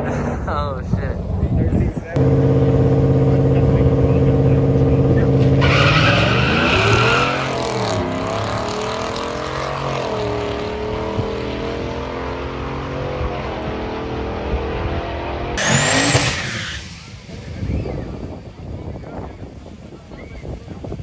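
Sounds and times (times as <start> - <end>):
drag car engine revving: 1.3 - 21.0
tyre squeal: 5.0 - 10.1, 15.6 - 19.1.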